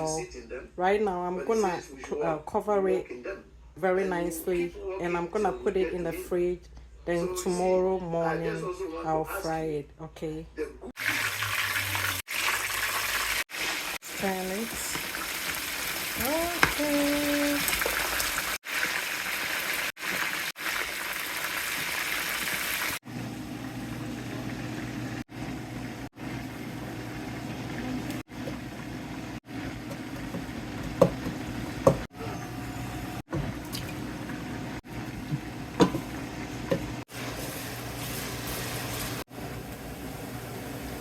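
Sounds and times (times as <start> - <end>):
chicken sizzling in hot oil: 11.0 - 25.3, 35.6 - 41.0.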